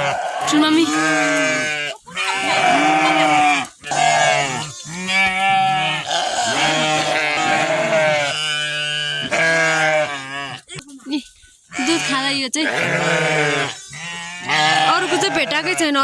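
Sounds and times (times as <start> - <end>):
sheep and lambs bleating: 0.0 - 11.0, 11.7 - 16.0.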